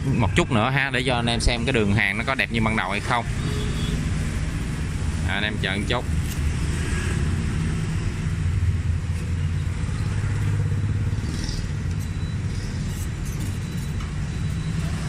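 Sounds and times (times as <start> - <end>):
road traffic rumble: 0.0 - 15.0.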